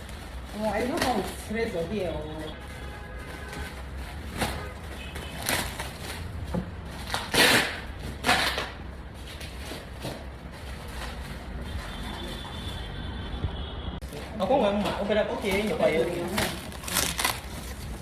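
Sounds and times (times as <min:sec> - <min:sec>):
packaging scrapes and knocks: 0:02.6 - 0:12.8.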